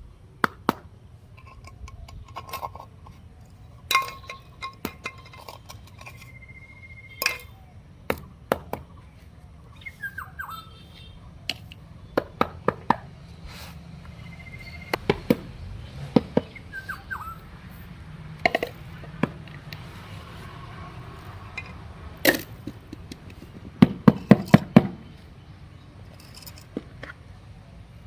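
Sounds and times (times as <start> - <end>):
clicks of small hard objects: 1.4 - 6.6, 17.7 - 25.3, 26.0 - 27.2
high falling squeaky chirps: 6.0 - 7.8, 9.7 - 11.4, 14.1 - 15.2, 16.4 - 18.0.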